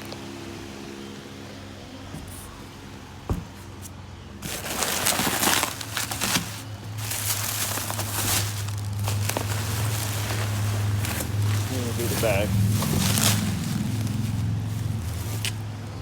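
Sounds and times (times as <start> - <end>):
steady low hum: 0.0 - 16.0
material crinkling and rustling: 3.3 - 16.0.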